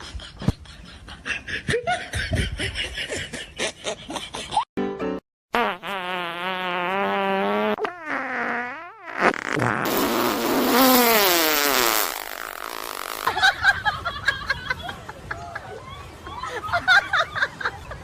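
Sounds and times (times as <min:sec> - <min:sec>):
wet fart sound effects: 0:05.6 - 0:13.3.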